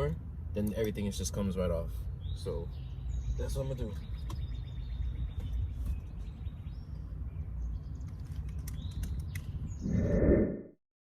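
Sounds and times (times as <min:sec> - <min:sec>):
birds chirping: 0:00.7 - 0:10.6
steady low rumble: 0:09.7 - 0:10.8.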